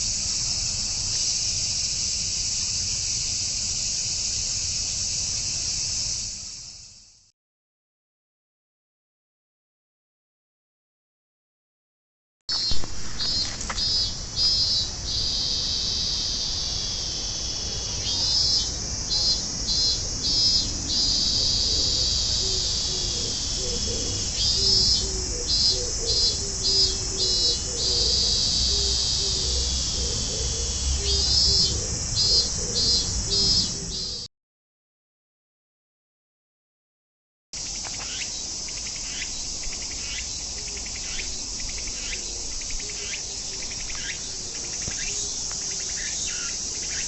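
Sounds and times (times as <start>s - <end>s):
cicada buzzing: 0.0s - 7.3s, 12.5s - 34.3s, 37.6s - 47.0s
dove cooing: 21.0s - 34.2s.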